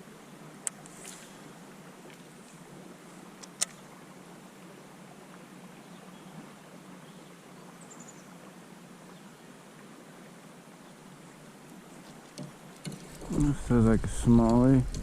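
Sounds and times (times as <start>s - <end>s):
river hiss: 0.0s - 14.8s.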